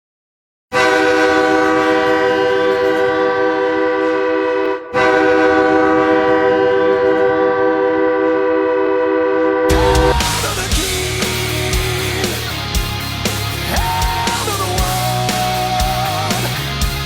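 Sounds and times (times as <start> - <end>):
ice hockey goal horn blaring: 0.7 - 11.2.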